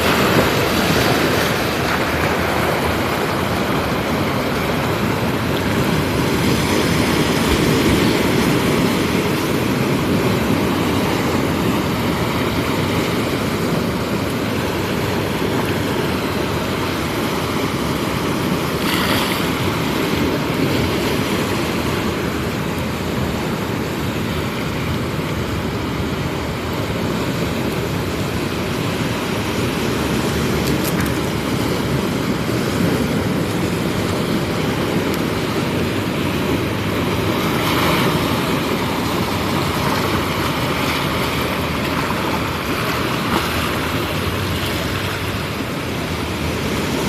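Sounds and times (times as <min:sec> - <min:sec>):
sea waves washing on shore: 0:00.0 - 0:47.0.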